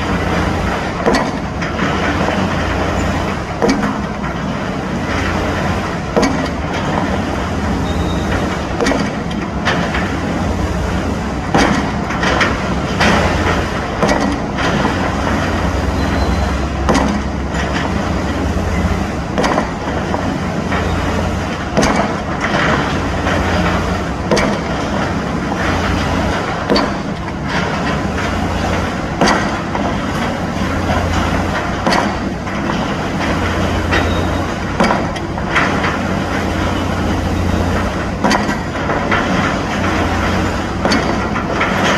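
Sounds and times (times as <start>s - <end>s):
pile driver hammer blows: 0.0s - 10.2s, 11.4s - 41.9s
low engine drone: 0.0s - 41.9s.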